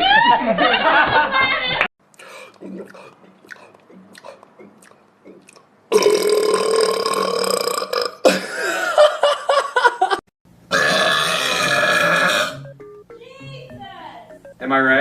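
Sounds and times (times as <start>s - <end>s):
man belching loudly: 5.3s - 8.5s, 10.7s - 12.6s.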